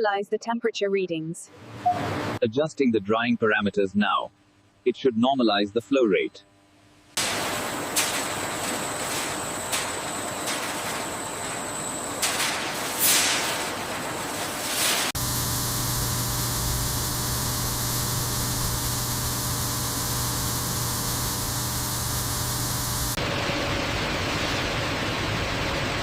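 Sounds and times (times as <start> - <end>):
machinery hiss: 7.2 - 23.2
low hum: 13.5 - 26.0.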